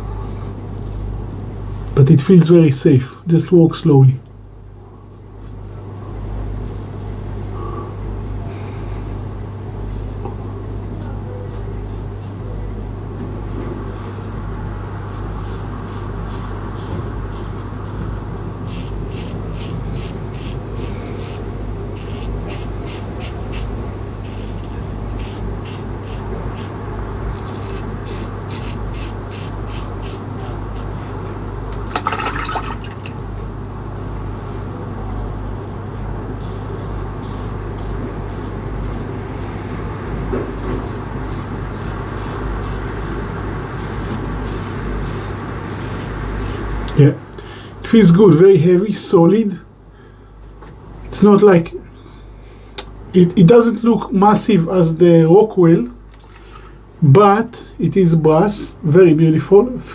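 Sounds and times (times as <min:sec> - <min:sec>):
low background hum: 0:00.0 - 0:59.9
razor scraping stubble: 0:00.2 - 0:01.5, 0:05.1 - 0:05.8, 0:06.5 - 0:07.6, 0:09.8 - 0:10.4, 0:11.0 - 0:12.5, 0:15.0 - 0:31.0, 0:35.0 - 0:47.0.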